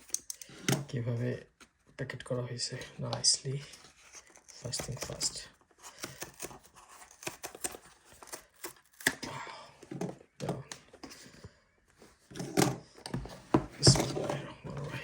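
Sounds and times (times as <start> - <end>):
packaging tearing and crinkling: 5.8 - 9.2.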